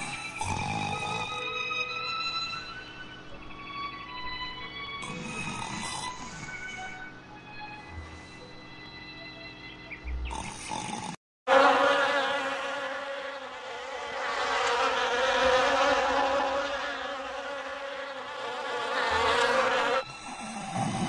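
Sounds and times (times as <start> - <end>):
steady even-pitched buzz: 11.5 - 20.4.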